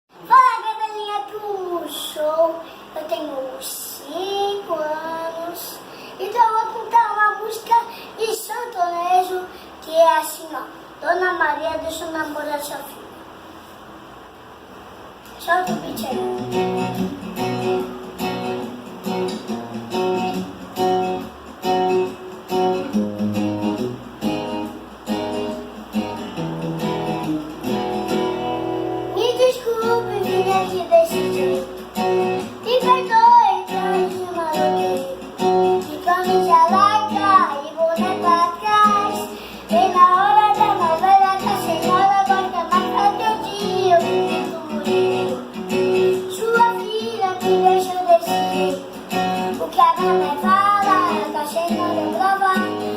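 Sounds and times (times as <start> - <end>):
child singing: 0.2 - 13.0, 15.4 - 16.4, 29.1 - 31.8, 32.4 - 45.5, 46.1 - 52.9
acoustic guitar backing track: 0.2 - 14.1, 15.0 - 52.9.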